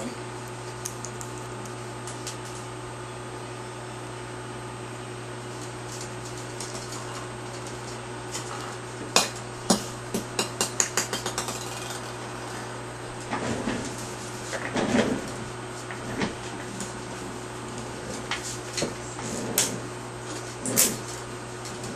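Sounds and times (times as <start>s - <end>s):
small hard ball bouncing: 9.2s - 12.2s.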